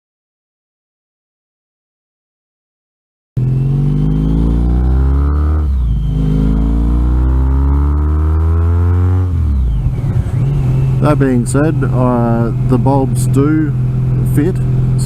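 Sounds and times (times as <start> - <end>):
motorcycle engine accelerating: 3.4 - 15.0.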